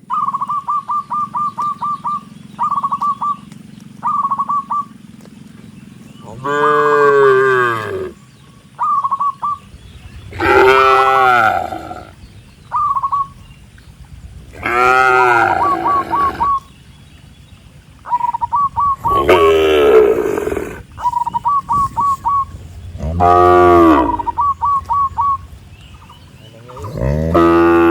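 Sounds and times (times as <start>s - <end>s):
cattle mooing: 6.2s - 8.2s, 10.3s - 12.2s, 14.5s - 16.6s, 19.0s - 20.9s, 22.8s - 25.4s, 26.6s - 27.9s.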